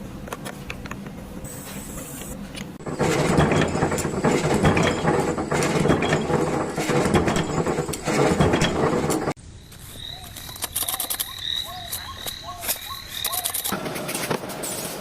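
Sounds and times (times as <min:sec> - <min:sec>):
mechanical clattering: 0:02.7 - 0:09.4.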